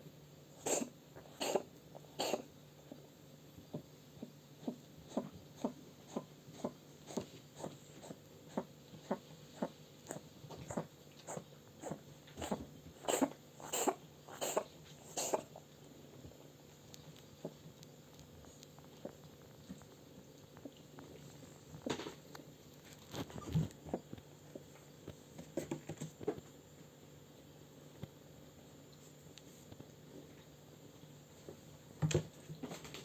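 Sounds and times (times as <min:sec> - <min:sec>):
cat coughing: 0:00.6 - 0:02.5, 0:11.8 - 0:15.5.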